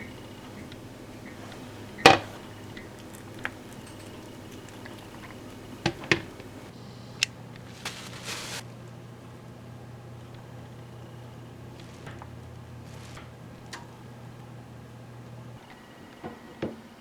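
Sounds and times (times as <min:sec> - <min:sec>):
utensils and dishes clinking: 0:00.0 - 0:06.7
short rustling hiss: 0:00.0 - 0:08.7, 0:11.6 - 0:13.4
low steady hum: 0:00.0 - 0:17.0.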